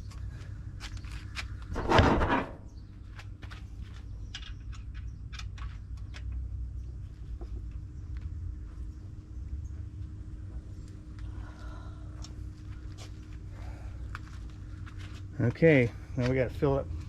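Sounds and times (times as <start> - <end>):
scraping rustling clunk: 1.6 - 2.7.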